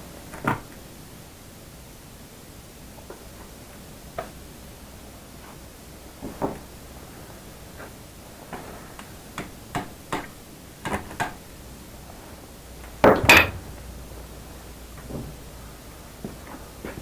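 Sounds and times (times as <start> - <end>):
metal hand tools clattering: 13.1 - 13.9.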